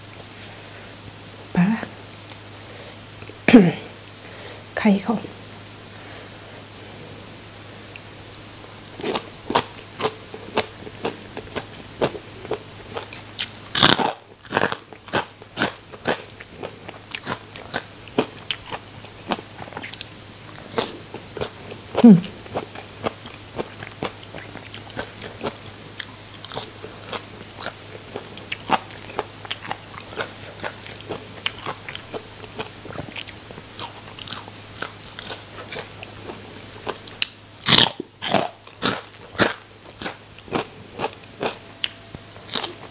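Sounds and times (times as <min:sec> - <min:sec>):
crunchy chewing: 0:08.7 - 0:42.9.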